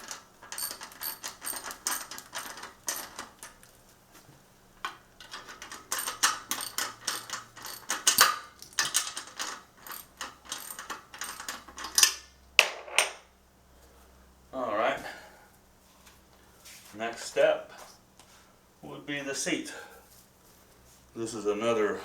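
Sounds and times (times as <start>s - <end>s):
ratcheting socket wrench clicking: 5.2s - 12.3s.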